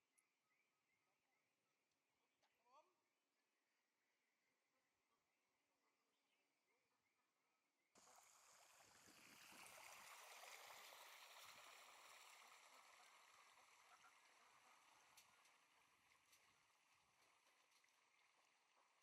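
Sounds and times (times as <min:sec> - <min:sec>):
flowing water rushing: 0:08.0 - 0:18.8.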